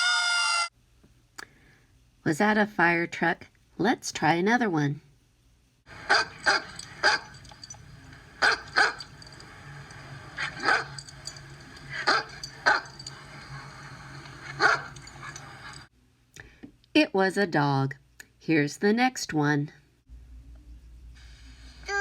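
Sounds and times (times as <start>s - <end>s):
low background hum: 0.0s - 22.0s
dog barking: 6.0s - 7.6s, 8.4s - 9.2s, 10.4s - 11.1s, 11.9s - 13.8s, 14.4s - 15.9s.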